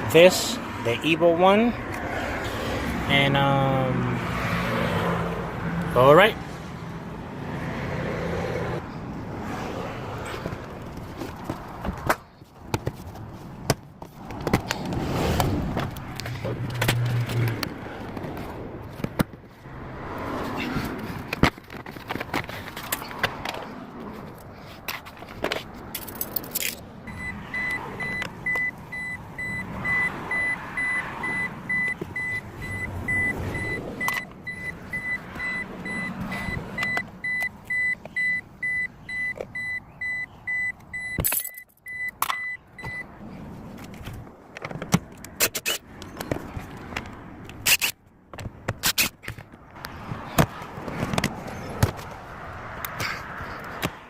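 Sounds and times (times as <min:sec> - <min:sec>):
handling clicks and knocks: 0:21.2 - 0:26.8, 0:43.8 - 0:52.2
car warning chime beeping: 0:27.1 - 0:43.1.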